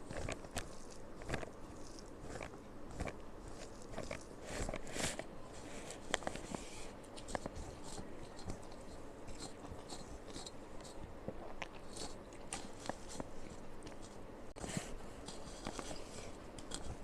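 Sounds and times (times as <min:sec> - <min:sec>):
soft chewing: 0:00.0 - 0:17.0
utensil clicks and scrapes: 0:00.0 - 0:17.0.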